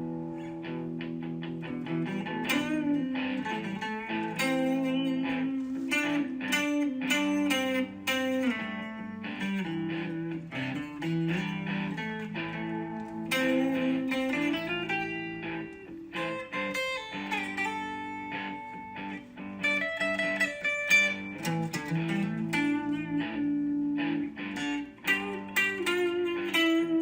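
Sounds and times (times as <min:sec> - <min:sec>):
plucked guitar music: 0:00.0 - 0:27.0.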